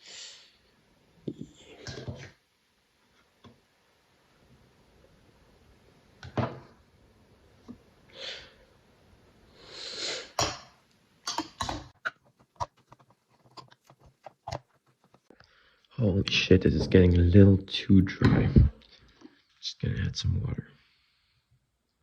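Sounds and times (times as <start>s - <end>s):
short breathy hisses: 9.6s - 10.4s
spoon scraping bowl: 11.3s - 15.3s.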